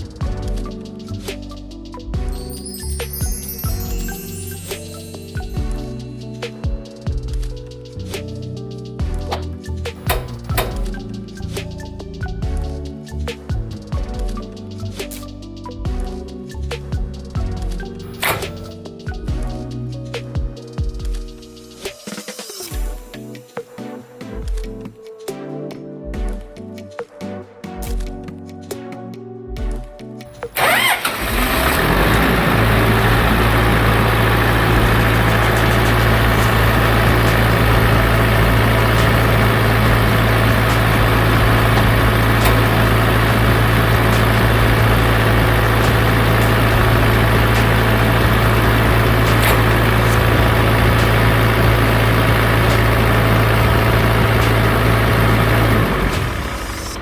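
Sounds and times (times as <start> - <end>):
pump engine running: 30.6 - 57.0.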